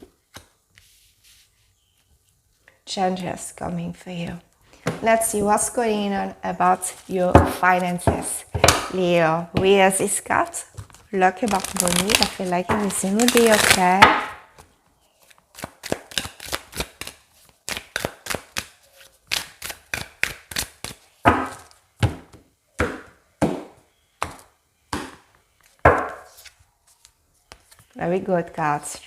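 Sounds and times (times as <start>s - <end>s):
cards slapping and tapping: 10.8s - 27.9s.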